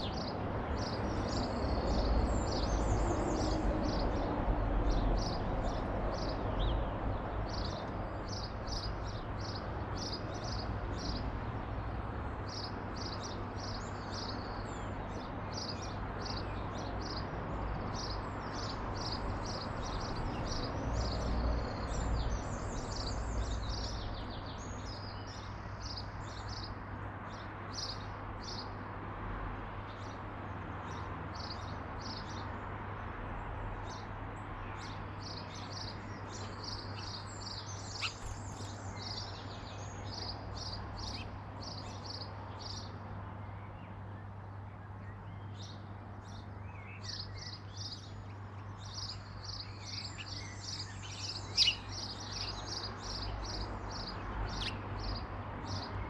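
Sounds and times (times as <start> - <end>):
birds chirping: 33.8 - 56.0.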